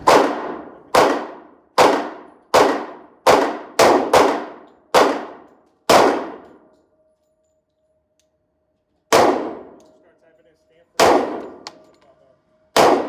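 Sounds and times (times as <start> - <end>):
gunshots with reverberant tail: 0.0 - 6.6, 9.1 - 9.8, 11.0 - 11.6, 12.8 - 13.0.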